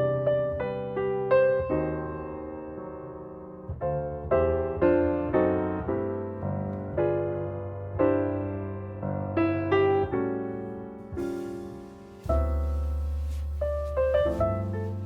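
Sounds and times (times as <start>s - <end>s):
slow gentle piano chords: 0.0s - 15.0s.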